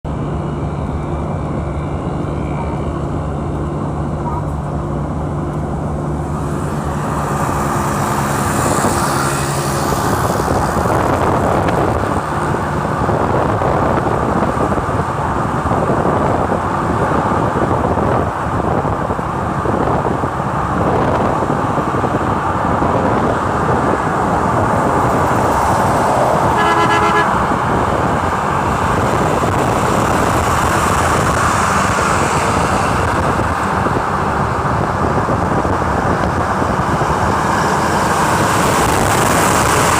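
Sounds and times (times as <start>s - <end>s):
low engine drone: 0.0s - 18.4s
passing cars and trucks: 0.0s - 39.9s
vehicle horn: 26.5s - 27.6s.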